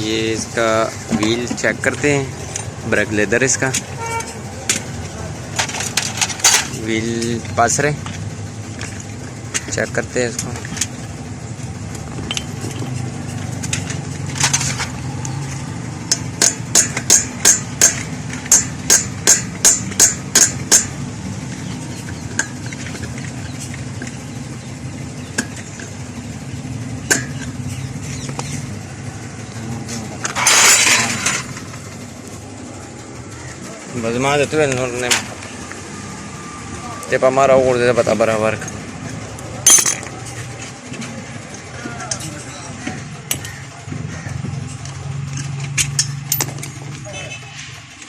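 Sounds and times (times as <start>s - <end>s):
steady low hum: 0.0s - 47.0s
hammer striking metal: 16.1s - 20.9s, 39.7s - 40.0s.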